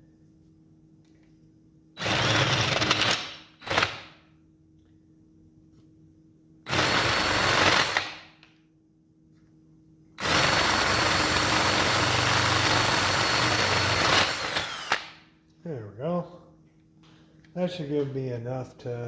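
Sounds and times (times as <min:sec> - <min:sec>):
electric power tool cutting: 0:10.2 - 0:15.1.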